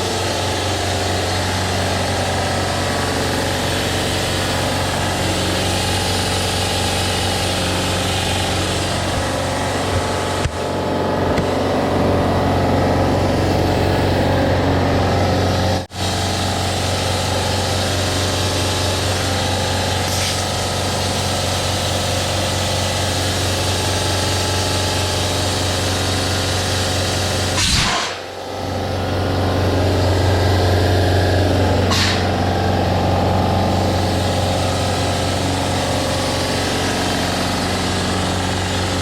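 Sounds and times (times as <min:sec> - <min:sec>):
air compressor running: 0:00.0 - 0:39.0.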